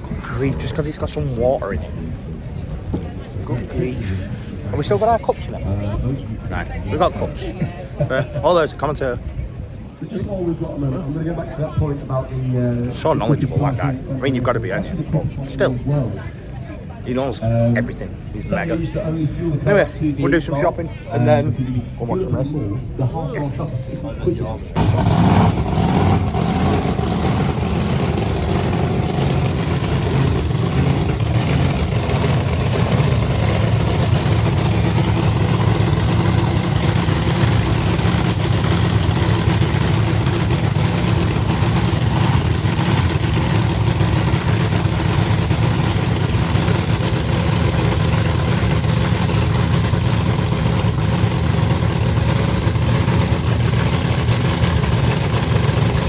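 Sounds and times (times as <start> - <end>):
engine idling: 24.8 - 56.0.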